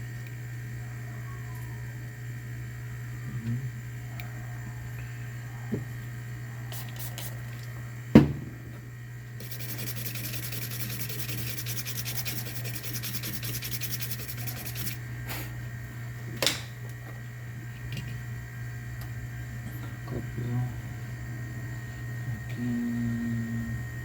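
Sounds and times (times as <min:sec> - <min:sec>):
steady low hum: 0:00.0 - 0:24.0
scrubbing on circuit board: 0:09.4 - 0:15.0.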